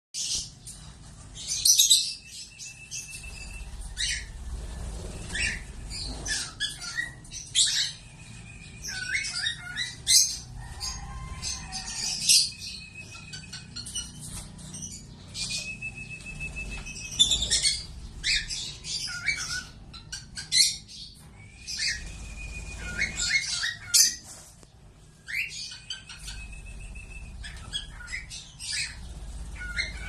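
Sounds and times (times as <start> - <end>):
lovebirds chirping: 0.2 - 30.0.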